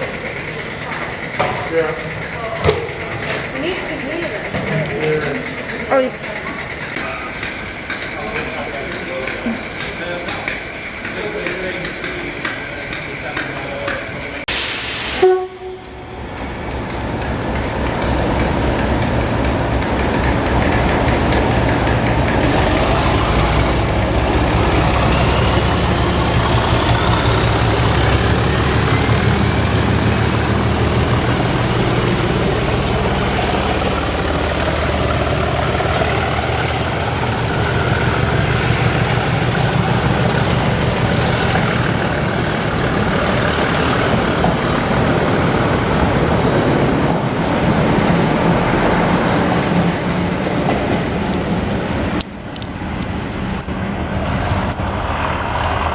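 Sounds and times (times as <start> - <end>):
train engine drone with rising whine: 0.0 - 55.9
short sharp hiss: 14.5 - 15.4.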